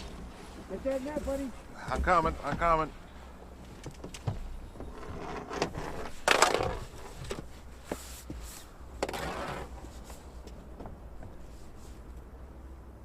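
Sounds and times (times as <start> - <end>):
fishing gear clattering: 5.0 - 7.5.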